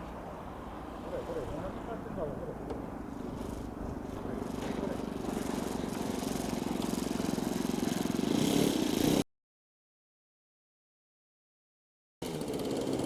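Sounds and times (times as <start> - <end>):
model airplane engine buzzing: 2.7 - 9.2, 12.2 - 13.0.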